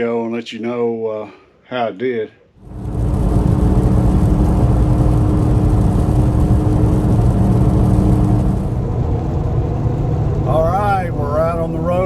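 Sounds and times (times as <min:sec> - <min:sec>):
road and engine rumble: 0:02.6 - 0:12.0.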